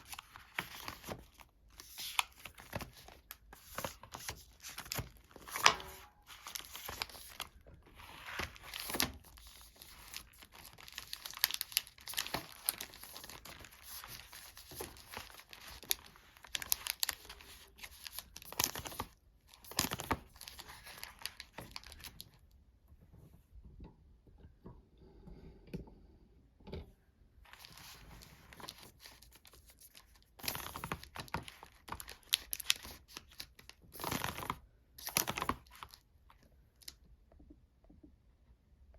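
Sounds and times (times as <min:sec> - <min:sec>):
wrappers crinkling: 0:00.0 - 0:22.2, 0:27.5 - 0:36.0.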